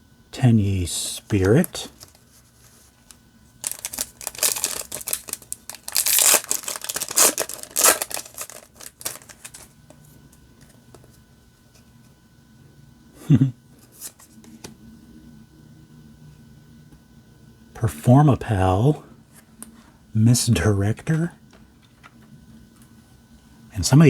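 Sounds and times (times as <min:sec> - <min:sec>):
foil wrapper tearing and crinkling: 0:03.0 - 0:09.7.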